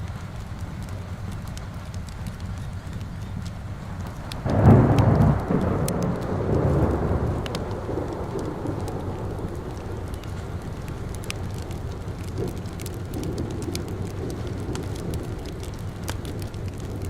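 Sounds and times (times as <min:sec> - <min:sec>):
steady rain falling: 0:00.0 - 0:17.0
wood fire crackling: 0:00.0 - 0:17.0
thunder rumbling: 0:04.1 - 0:17.0.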